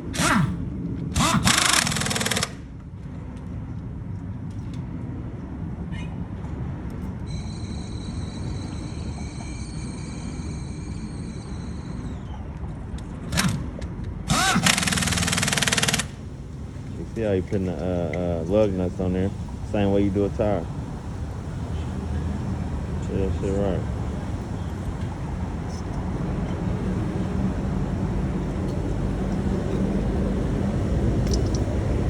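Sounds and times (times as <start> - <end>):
low engine rumble: 0.0 - 32.0
pneumatic air tool bursts: 0.1 - 2.6, 13.3 - 13.6, 14.3 - 16.2
high whine winding down: 7.3 - 12.4.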